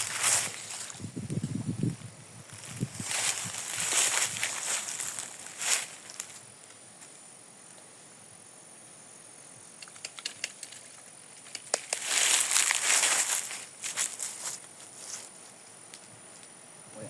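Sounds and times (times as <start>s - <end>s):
footsteps through brush: 0.0s - 7.1s, 10.8s - 15.6s
twigs snapping and clicking: 9.8s - 14.3s.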